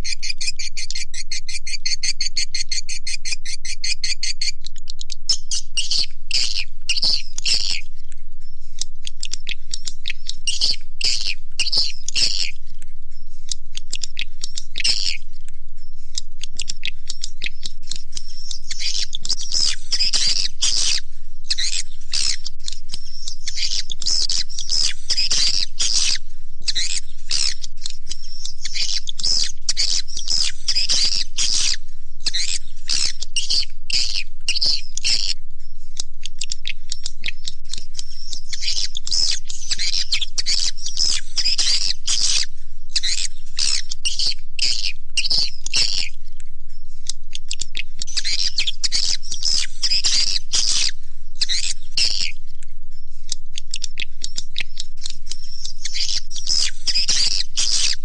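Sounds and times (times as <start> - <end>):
swiftlets twittering chirps: 5.3 - 58.0.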